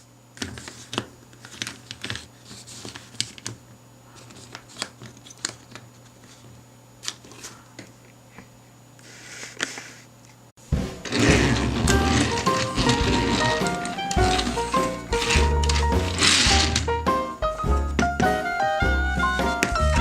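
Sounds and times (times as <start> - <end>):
plastic toys clicking: 11.1 - 16.9
wrapping crinkling: 11.1 - 16.9.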